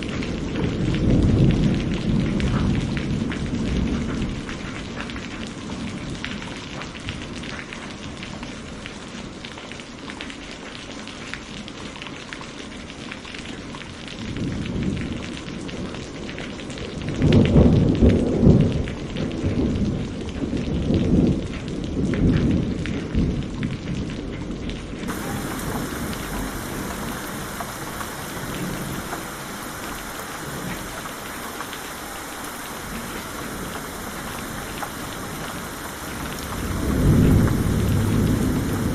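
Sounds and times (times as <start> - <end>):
steady rain falling: 0.0 - 38.9
thunder rolling: 25.1 - 38.9.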